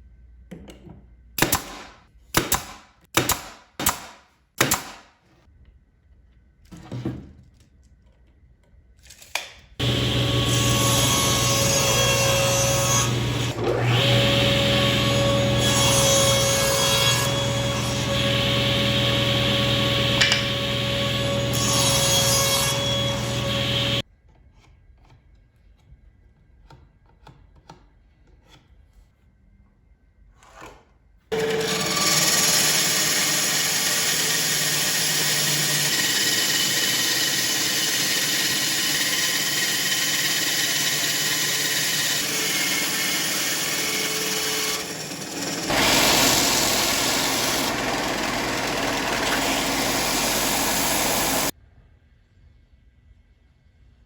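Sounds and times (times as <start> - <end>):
power saw cutting plywood: 9.8 - 24.0, 31.3 - 51.6.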